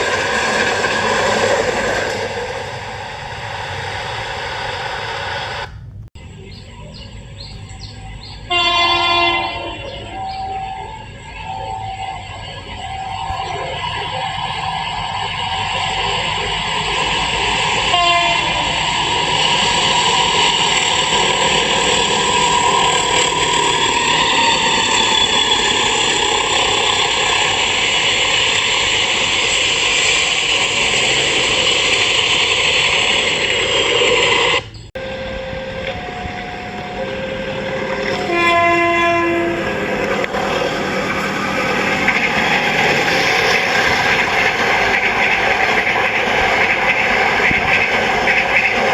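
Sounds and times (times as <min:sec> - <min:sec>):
locomotive rolling past: 0:00.0 - 0:48.9
multi-tone air horn: 0:08.5 - 0:10.8, 0:17.8 - 0:18.9, 0:35.0 - 0:39.7.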